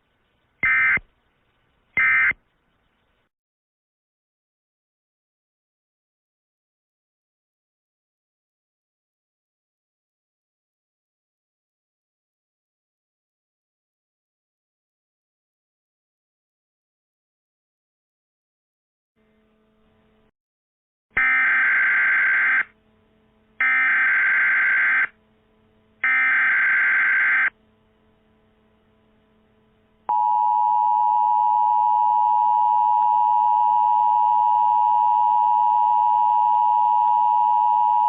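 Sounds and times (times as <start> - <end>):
two-tone attention signal: 30.1 - 38.0.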